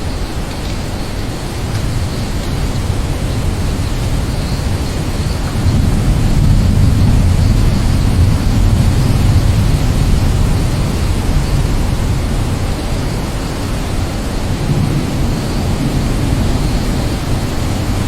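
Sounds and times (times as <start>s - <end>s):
heavy rain: 0.0s - 18.0s
low rumble: 4.1s - 13.3s.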